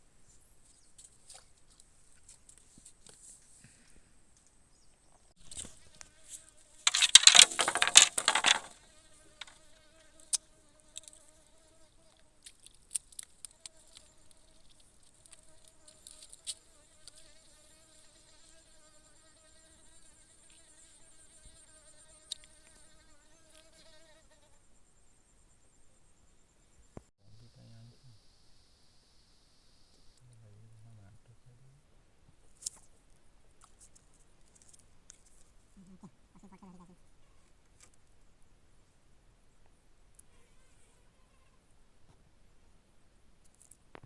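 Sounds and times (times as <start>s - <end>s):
insect buzzing: 5.4s - 25.0s
loud rough rustling: 6.8s - 8.8s.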